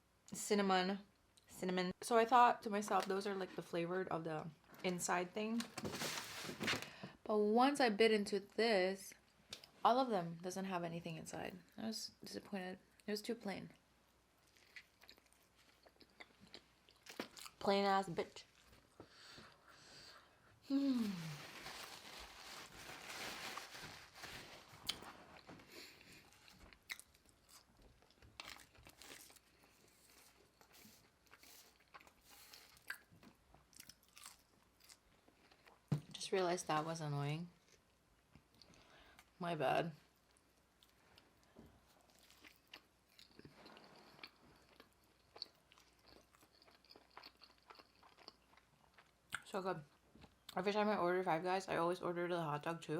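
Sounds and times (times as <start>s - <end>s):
crunchy chewing: 24.8s - 35.8s, 42.1s - 49.2s.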